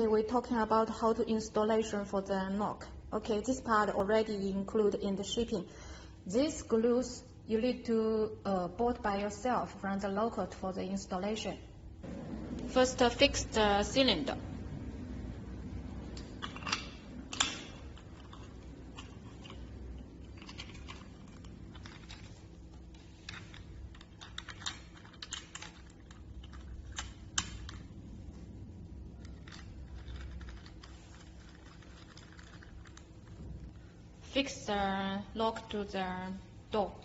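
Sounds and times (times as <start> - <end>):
faint low hum: 0.0 - 37.0
metal parts clicking: 16.4 - 22.4, 23.2 - 27.8, 29.2 - 33.1.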